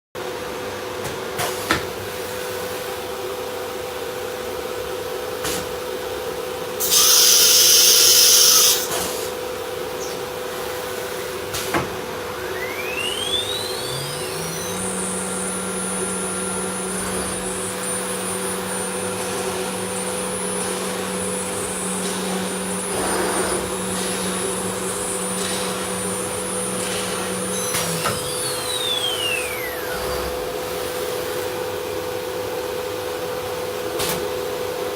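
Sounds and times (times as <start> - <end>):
router spindle whine: 6.8 - 8.9, 12.2 - 31.0
router machine hum: 6.8 - 9.0, 12.0 - 30.8
compressed air hiss: 6.8 - 9.3.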